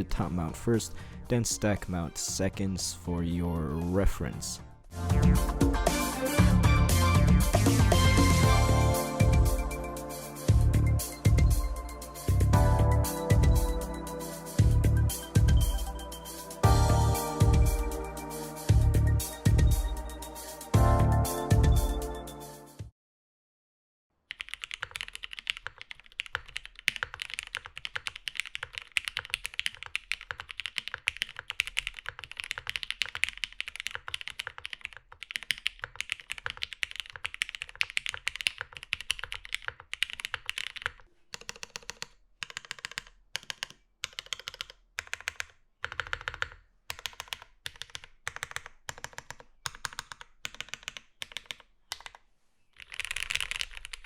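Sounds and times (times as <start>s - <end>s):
mechanical keyboard typing: 24.3s - 52.2s, 52.8s - 54.0s.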